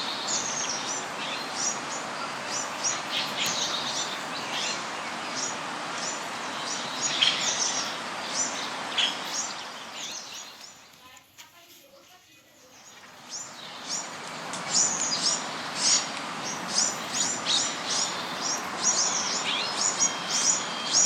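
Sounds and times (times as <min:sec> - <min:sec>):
small birds chirping: 0:00.0 - 0:21.0
steady background hiss: 0:00.0 - 0:21.0.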